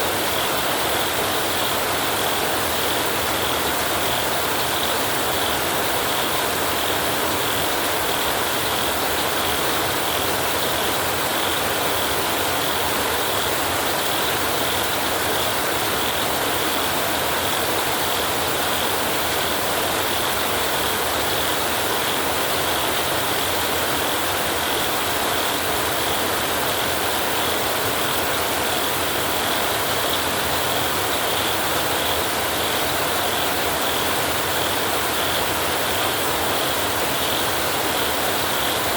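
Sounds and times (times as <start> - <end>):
heavy rain on a tin roof: 0.0 - 38.9.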